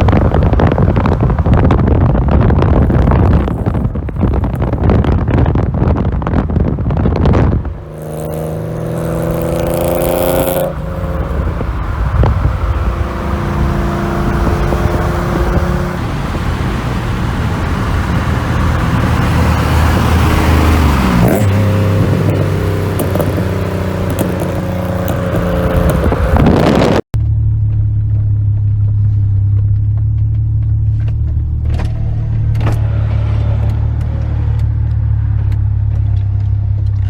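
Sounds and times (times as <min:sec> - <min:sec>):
wind buffeting microphone: 0:00.0 - 0:27.1
car engine drone: 0:00.0 - 0:37.0
low rumble: 0:00.0 - 0:37.0.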